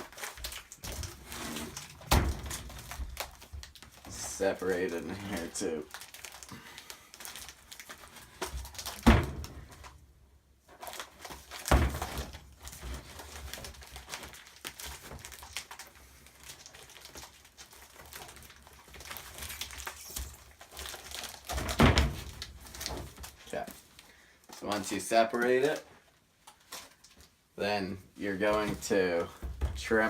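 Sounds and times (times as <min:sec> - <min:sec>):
loud thunks: 0:09.0 - 0:09.6.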